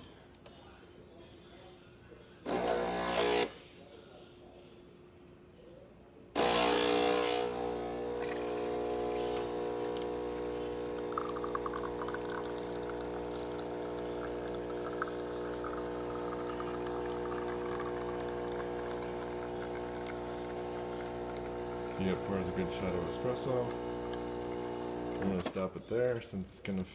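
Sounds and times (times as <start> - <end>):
espresso machine pump humming: 6.4 - 25.5
espresso trickling into cup: 7.6 - 25.5.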